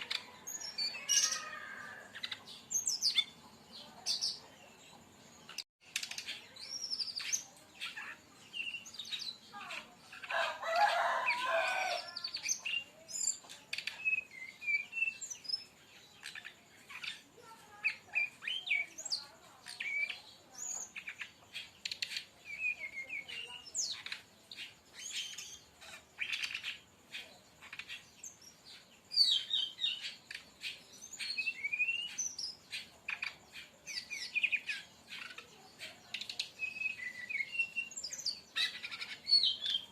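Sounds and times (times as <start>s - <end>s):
bird singing chirps and whistles: 12.3s - 17.2s, 17.9s - 25.6s, 29.1s - 39.9s.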